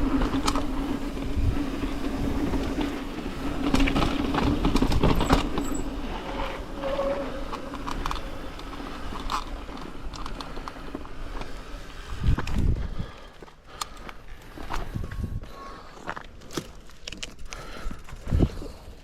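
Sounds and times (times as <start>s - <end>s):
bike clicks and rattles: 0.0s - 19.0s
bike tyres rumbling on dirt: 0.0s - 19.0s
wind on microphone: 12.1s - 13.2s, 14.8s - 15.5s.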